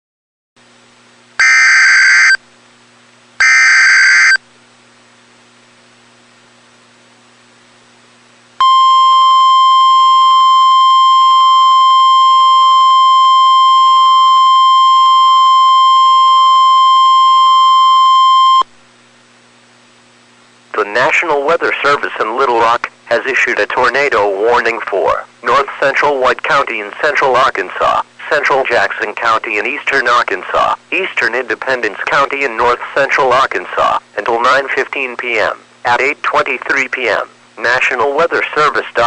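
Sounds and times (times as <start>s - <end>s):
screeching digital data bursts: 1.4s - 2.4s, 3.4s - 4.4s
steady alarm tone: 1.4s - 2.4s, 3.4s - 4.4s, 8.6s - 18.6s.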